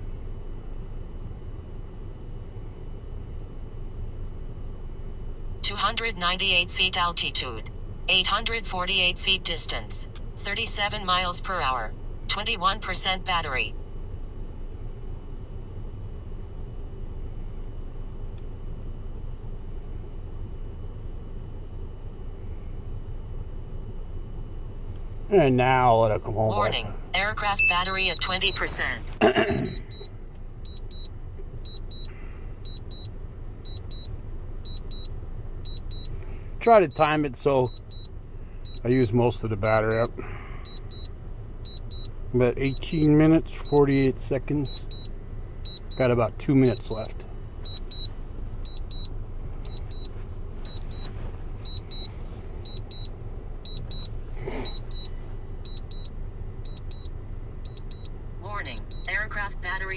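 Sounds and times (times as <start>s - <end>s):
high double warning beeps: 26.5s - 57.1s, 57.7s - 59.9s
remote controller beeping: 27.6s - 28.9s, 41.7s - 44.0s, 47.7s - 48.1s, 49.7s - 52.1s, 56.7s - 57.1s.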